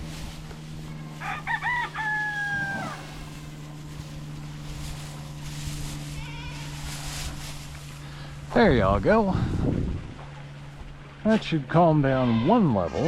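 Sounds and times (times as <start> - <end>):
steady low hum: 0.0 - 13.0
livestock bleating: 1.9 - 3.2, 5.9 - 7.4, 12.0 - 13.0.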